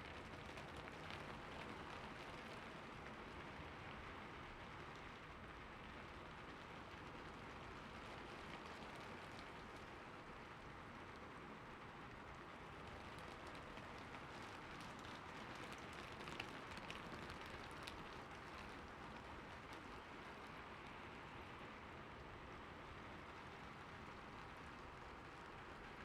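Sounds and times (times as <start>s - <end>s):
hiss of falling rain: 0.0s - 26.0s
raindrops ticking: 12.9s - 20.0s.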